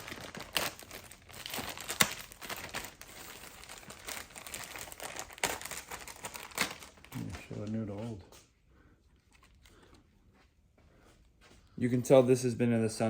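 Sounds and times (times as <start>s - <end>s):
crinkly plastic rustling: 0.0s - 8.3s, 9.2s - 10.0s.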